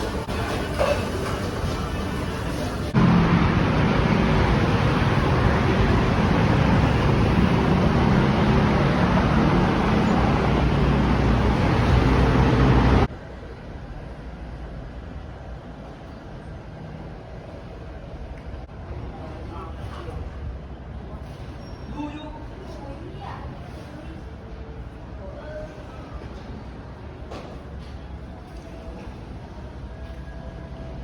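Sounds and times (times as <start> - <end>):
vehicle engine hum and rushing: 2.8 - 13.1.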